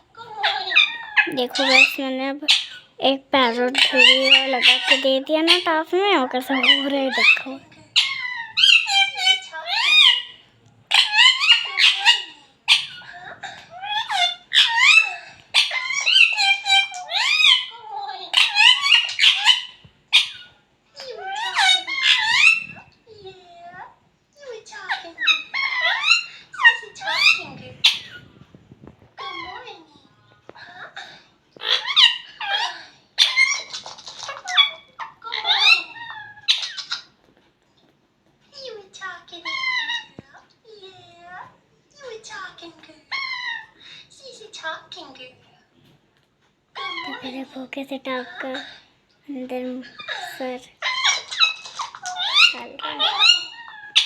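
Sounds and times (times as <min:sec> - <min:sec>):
parrots squawking and whistling: 0:00.2 - 0:03.0, 0:03.6 - 0:05.8, 0:06.5 - 0:23.0, 0:24.8 - 0:28.4, 0:30.6 - 0:37.2, 0:39.3 - 0:40.2, 0:43.1 - 0:43.8, 0:46.7 - 0:47.3, 0:49.8 - 0:54.0
parakeet squeaky calls: 0:00.4 - 0:02.9, 0:03.6 - 0:05.8, 0:06.5 - 0:20.6, 0:21.2 - 0:22.9, 0:25.0 - 0:28.3, 0:31.6 - 0:37.2, 0:50.0 - 0:54.0.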